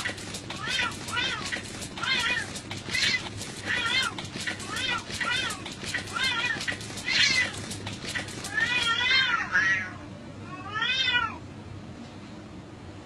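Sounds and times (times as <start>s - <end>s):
rapid sharp taps: 0.0s - 8.9s
cat meowing: 8.5s - 11.4s.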